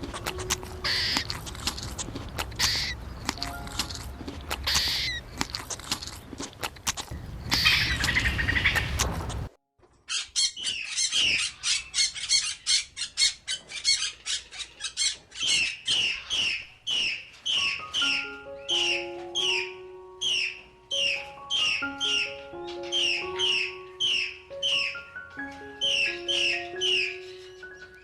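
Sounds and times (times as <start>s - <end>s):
animal harsh squawks: 0.0s - 6.2s, 7.0s - 9.5s, 20.3s - 25.1s
noisy outdoor background: 0.0s - 28.0s
high chirps falling in pitch: 2.7s - 5.2s, 17.5s - 28.0s.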